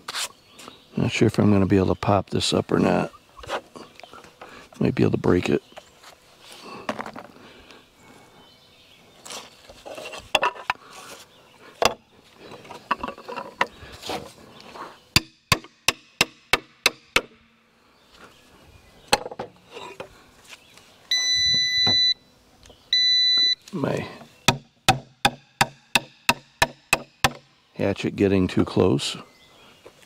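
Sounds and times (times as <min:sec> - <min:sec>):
hatchet striking a log: 0:15.2 - 0:17.4, 0:24.5 - 0:27.5
electronic beep: 0:21.1 - 0:22.2, 0:22.9 - 0:23.6.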